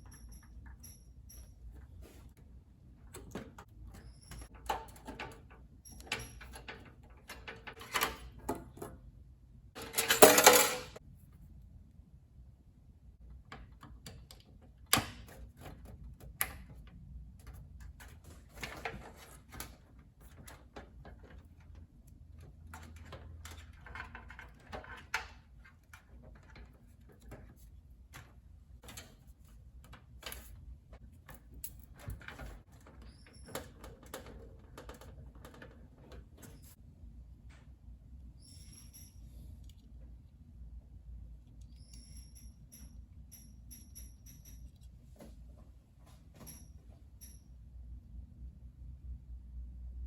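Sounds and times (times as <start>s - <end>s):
computer parts clicking and knocking: 9.8s - 11.0s.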